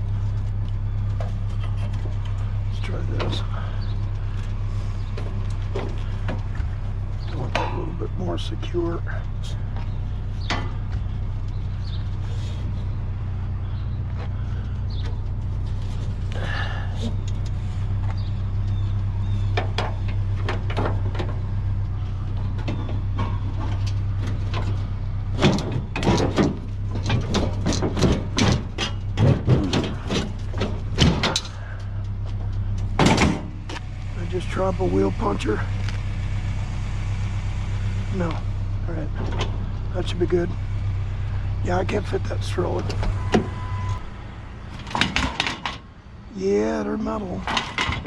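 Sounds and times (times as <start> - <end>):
steady low hum: 0.0 - 48.0
scrap knocking and clattering: 22.4 - 33.9, 44.8 - 45.9.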